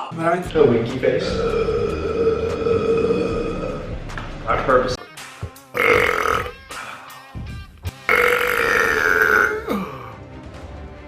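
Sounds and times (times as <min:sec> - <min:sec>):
man belching: 0:01.3 - 0:04.0, 0:05.8 - 0:06.6, 0:08.1 - 0:10.2.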